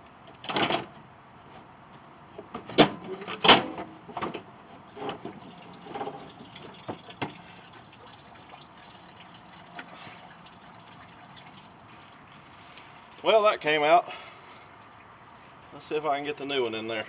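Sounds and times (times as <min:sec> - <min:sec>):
liquid dripping into a bucket: 0:04.9 - 0:12.9.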